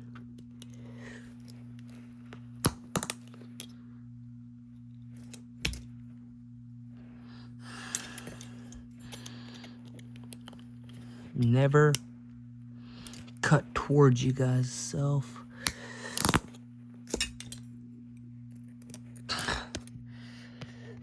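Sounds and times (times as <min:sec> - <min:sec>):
low electrical hum: 0:00.0 - 0:21.0
metal clicks and snaps: 0:15.6 - 0:17.7.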